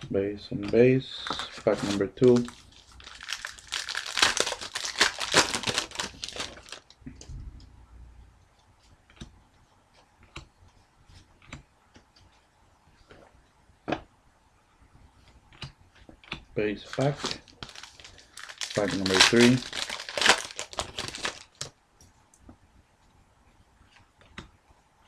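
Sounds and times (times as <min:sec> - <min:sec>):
wrapper tearing and crinkling: 0:01.2 - 0:06.9, 0:16.9 - 0:21.7.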